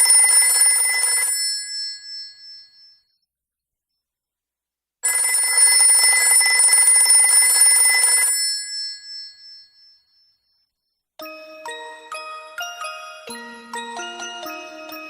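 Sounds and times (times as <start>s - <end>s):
electronic keyboard melody: 11.2s - 15.0s.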